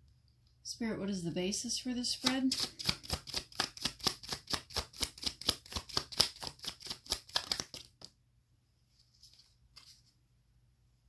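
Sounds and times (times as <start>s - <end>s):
cards being shuffled: 2.2s - 8.2s, 9.1s - 10.2s
cards rustling: 2.2s - 8.2s.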